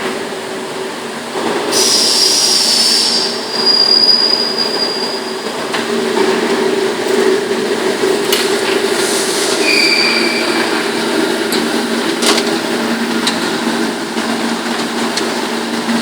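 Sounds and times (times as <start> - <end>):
high metallic squeal and hiss: 1.8 - 5.6, 9.0 - 10.9.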